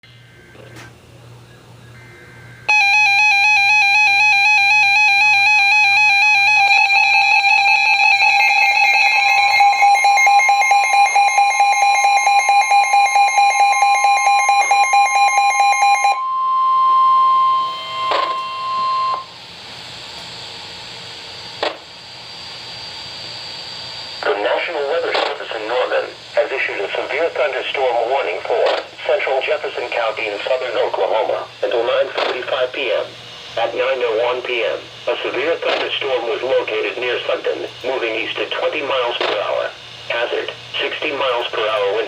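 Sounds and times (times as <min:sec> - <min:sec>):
steady alert tone: 0:02.0 - 0:19.3
pulsing electronic alert beeping: 0:02.1 - 0:19.3.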